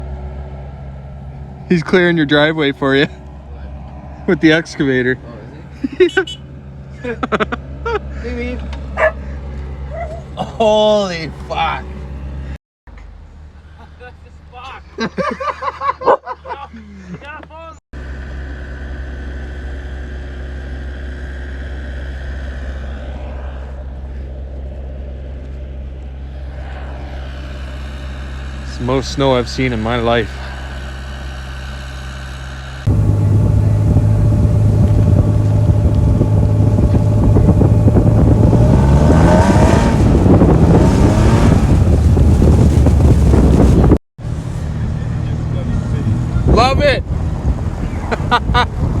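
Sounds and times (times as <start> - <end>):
engine running: 0.0 - 15.4, 18.0 - 49.0
faint steady whine: 32.5 - 38.0.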